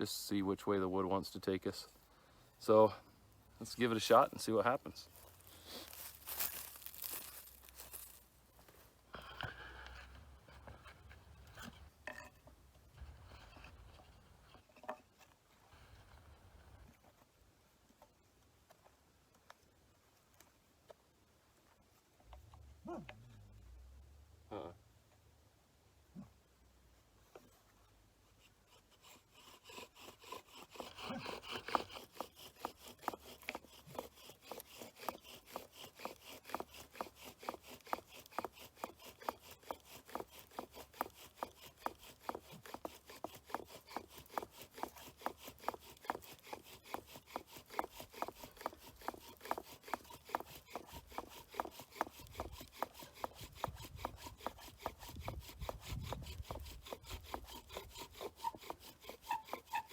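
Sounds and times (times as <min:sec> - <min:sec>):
bow drill wooden rubbing: 0:03.6 - 0:08.2, 0:28.5 - 0:59.9.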